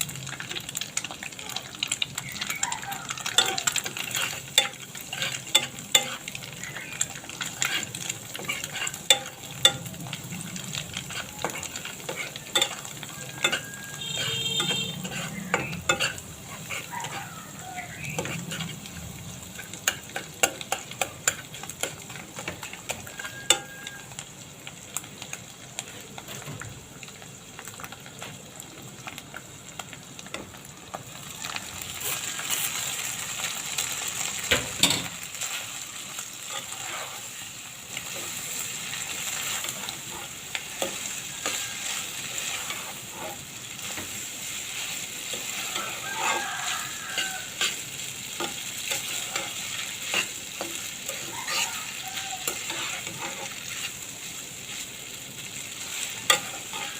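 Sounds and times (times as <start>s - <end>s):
noodles sizzling in a pan: 0.0s - 56.9s.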